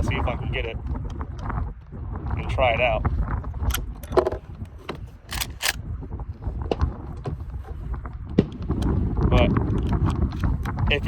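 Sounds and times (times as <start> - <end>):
wind rumbling on microphone: 0.0 - 11.0
sharp clicks and ticks: 5.3 - 5.8.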